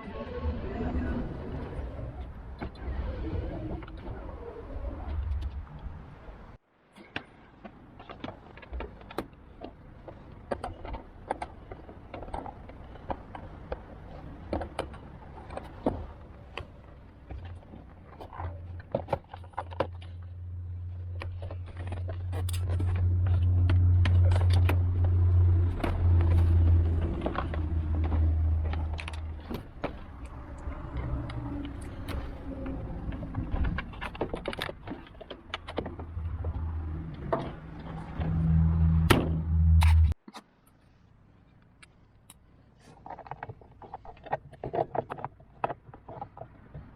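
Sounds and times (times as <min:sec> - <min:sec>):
metallic clicks and scrapes of tools: 0:39.8 - 0:40.8.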